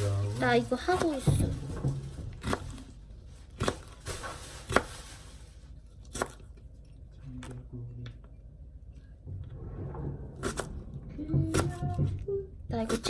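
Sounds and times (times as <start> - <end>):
knife chopping on cutting board: 2.4 - 2.9, 3.5 - 4.0, 6.1 - 6.4.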